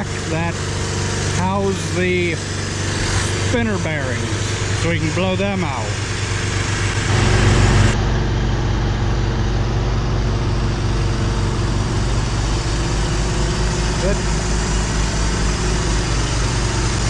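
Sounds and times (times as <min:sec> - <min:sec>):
engine idling: 0:00.0 - 0:17.0
rush of noise: 0:02.0 - 0:08.0.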